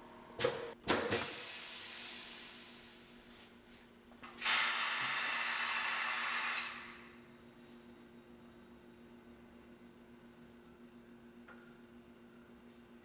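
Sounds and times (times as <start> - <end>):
compressed air hissing: 1.2 - 3.3.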